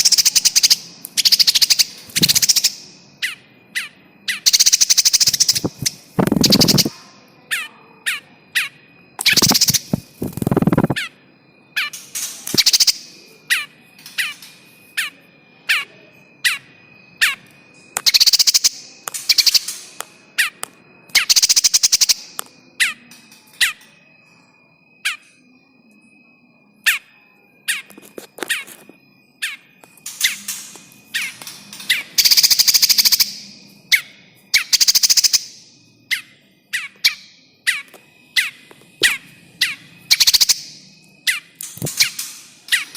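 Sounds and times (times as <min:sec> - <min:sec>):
harsh bird rattling: 0:00.0 - 0:02.8, 0:04.5 - 0:06.9, 0:09.2 - 0:11.1
bird distress chirps: 0:00.0 - 0:11.2, 0:11.8 - 0:14.4, 0:15.0 - 0:19.7, 0:21.2 - 0:23.8, 0:31.2 - 0:42.9
faint high whine: 0:00.0 - 0:42.9
bird harsh rattle call: 0:04.5 - 0:06.9.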